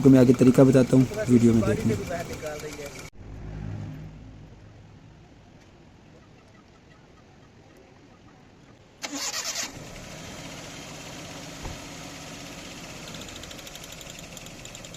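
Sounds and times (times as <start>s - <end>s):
car engine starting and idling: 0.0s - 5.4s, 9.0s - 14.9s
brief thump: 11.6s - 11.8s.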